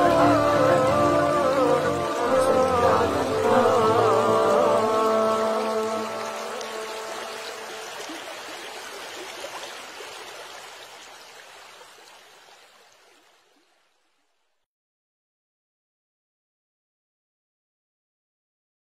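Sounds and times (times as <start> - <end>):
running water: 0.0 - 14.4.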